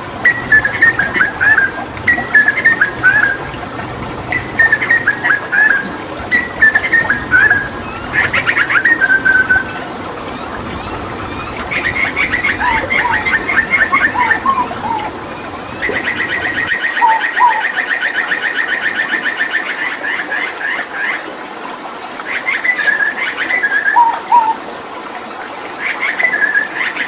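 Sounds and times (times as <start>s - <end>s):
butcherbird singing: 0.2s - 3.5s, 4.3s - 18.9s.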